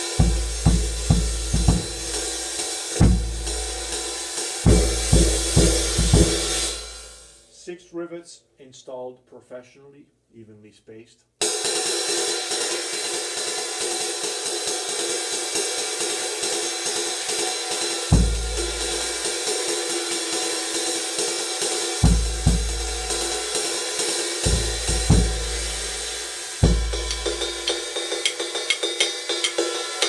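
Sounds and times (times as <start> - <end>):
ride cymbal with rivet sizzle: 0.0 - 7.3
bass drum hits: 0.2 - 2.4, 3.0 - 4.1, 4.7 - 7.0, 18.1 - 19.0, 22.0 - 23.4, 24.4 - 27.8.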